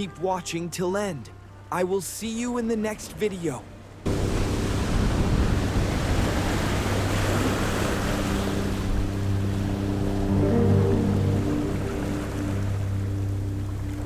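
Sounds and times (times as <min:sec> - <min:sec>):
low hum: 0:03.7 - 0:14.0
surf washing onto beach: 0:04.0 - 0:14.0
wind on microphone: 0:04.1 - 0:14.0.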